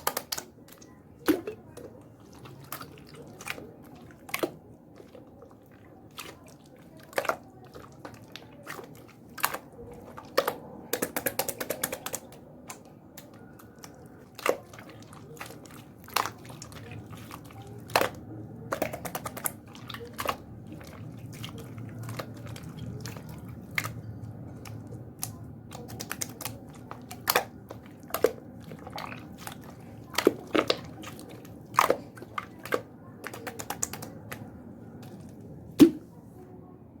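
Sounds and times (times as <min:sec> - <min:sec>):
slime air pops: 0:35.8 - 0:36.1.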